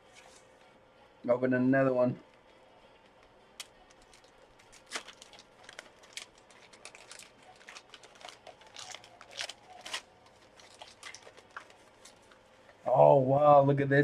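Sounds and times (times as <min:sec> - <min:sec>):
wrapping material crinkling: 0:03.9 - 0:12.4.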